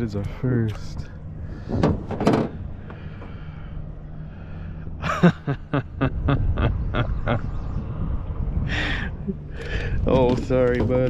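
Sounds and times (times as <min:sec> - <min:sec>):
steady low hum: 0:00.0 - 0:10.8
man laughing: 0:05.0 - 0:07.6, 0:08.7 - 0:09.6.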